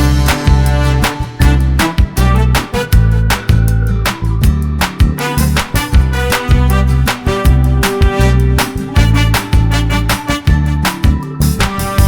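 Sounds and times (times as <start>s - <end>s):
background music with beat: 0.0s - 12.0s.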